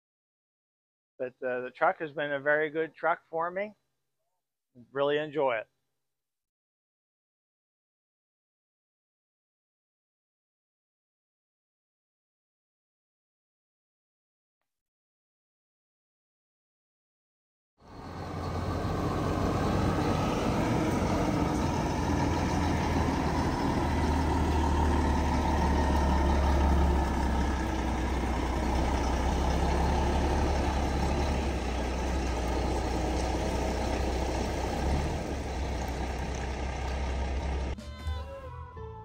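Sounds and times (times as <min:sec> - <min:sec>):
road noise: 0:17.8 - 0:37.8
diesel truck engine running: 0:17.9 - 0:38.1.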